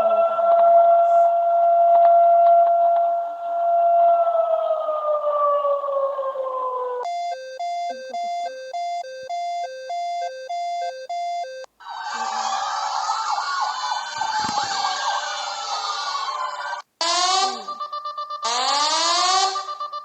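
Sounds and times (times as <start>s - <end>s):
falling siren glide: 0.0s - 20.0s
overlapping siren wails: 0.0s - 20.0s
alternating two-pitch tone: 7.0s - 11.7s.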